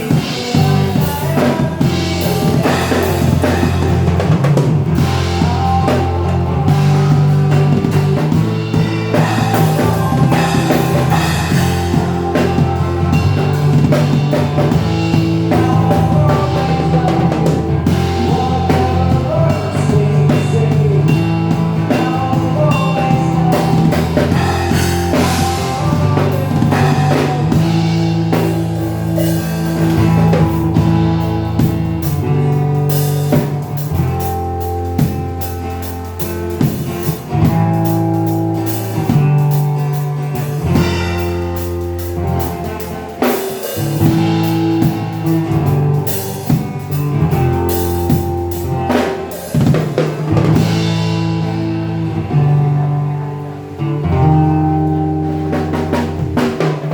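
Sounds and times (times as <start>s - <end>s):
bass guitar notes: 0.0s - 56.9s
drum kit beat: 0.0s - 56.9s
guitar: 0.0s - 56.9s.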